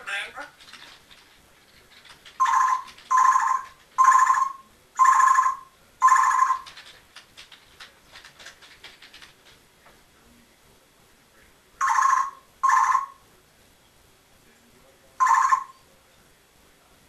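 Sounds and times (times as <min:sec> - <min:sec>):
parrot soft clicks and chatter: 0:00.0 - 0:04.0, 0:06.5 - 0:09.6
parrot beep-like calls: 0:02.4 - 0:06.7, 0:11.8 - 0:13.2, 0:15.2 - 0:15.8.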